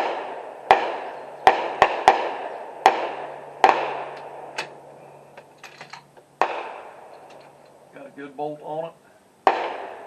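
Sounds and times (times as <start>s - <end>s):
echoing gunshots: 0.0s - 4.9s, 6.4s - 7.2s, 9.4s - 10.0s
faint steady hum: 0.0s - 10.0s.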